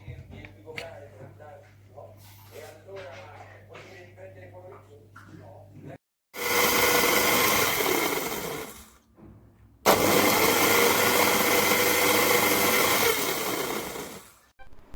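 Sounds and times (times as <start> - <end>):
coffee grinder whining: 6.4 - 8.9, 9.9 - 14.4.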